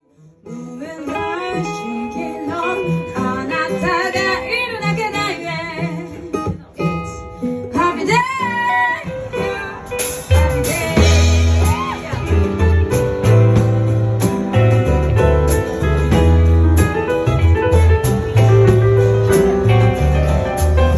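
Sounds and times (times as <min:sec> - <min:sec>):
plucked guitar: 0:00.4 - 0:20.9
heavy bass: 0:10.1 - 0:20.9.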